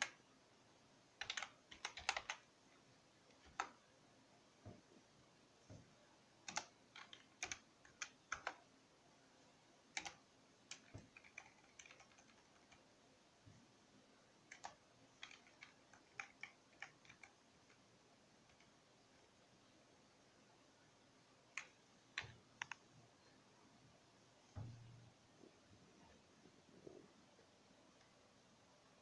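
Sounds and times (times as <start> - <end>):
keyboard typing clicks: 1.2 - 2.4, 3.3 - 3.8, 6.4 - 8.6, 10.0 - 12.8, 14.5 - 17.8.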